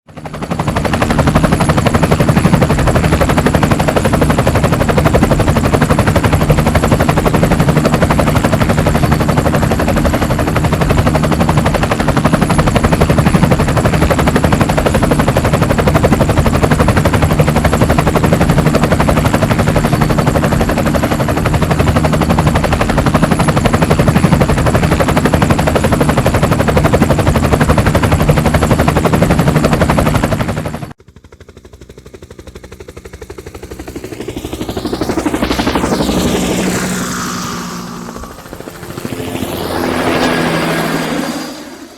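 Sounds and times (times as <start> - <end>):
helicopter engine drone: 0.1 - 41.9
helicopter rotor chopping: 0.1 - 41.9
faint high whine: 33.2 - 41.9.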